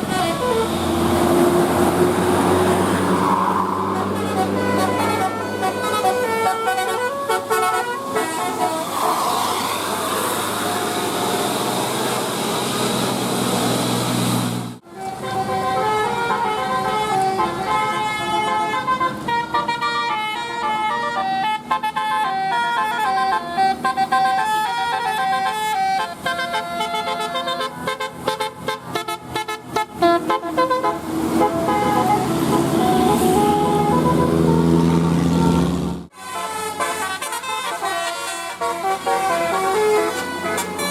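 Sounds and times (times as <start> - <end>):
bus horn playing melody: 0.0 - 11.8, 14.8 - 40.9.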